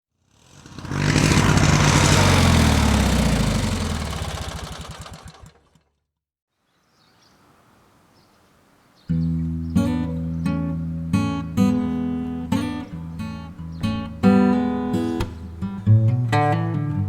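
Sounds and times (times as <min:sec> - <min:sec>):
motorcycle engine running: 0:00.2 - 0:05.9.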